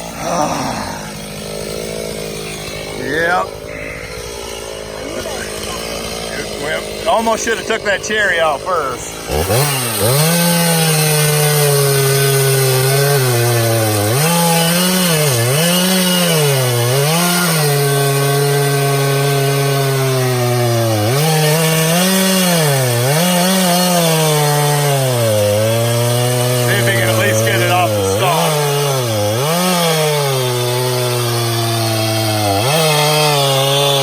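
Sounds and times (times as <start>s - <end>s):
chainsaw cutting wood: 0.0s - 34.0s.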